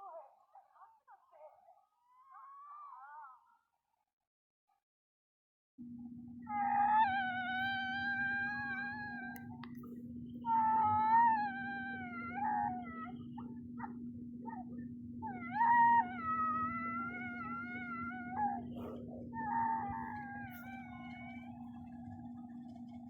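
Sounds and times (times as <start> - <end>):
steady low hum: 5.8 - 23.0
cartoon character wailing cry: 10.5 - 13.2, 15.3 - 18.7.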